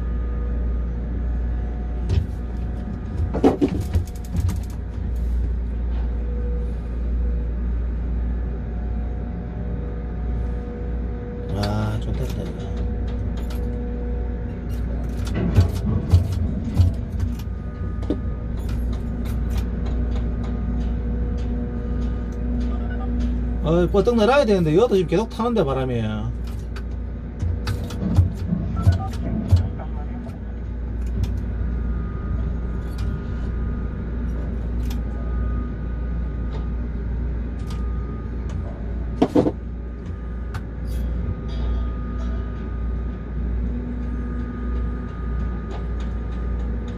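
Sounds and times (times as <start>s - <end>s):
low rumble and electric hum: 0.0s - 46.9s.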